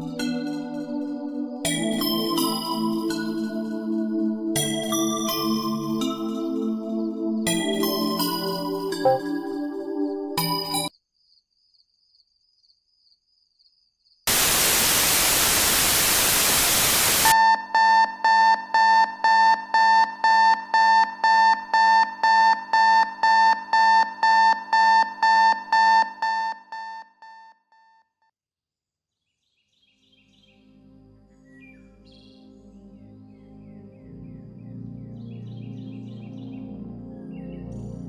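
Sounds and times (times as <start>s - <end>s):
white-noise static burst: 14.3s - 17.4s.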